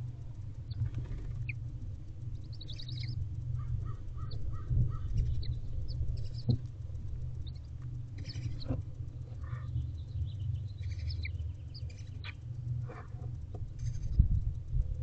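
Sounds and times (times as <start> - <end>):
steady low hum: 0.0 - 15.0
high bird chirps: 2.4 - 6.5, 7.4 - 8.7, 9.4 - 12.5.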